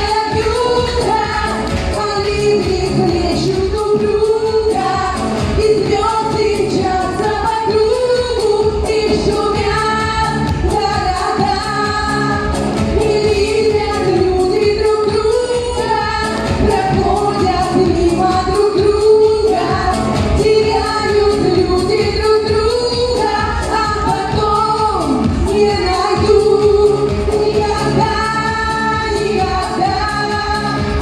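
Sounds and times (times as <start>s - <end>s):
steady beat: 0.0s - 7.5s
pop song with lead melody: 0.0s - 31.0s.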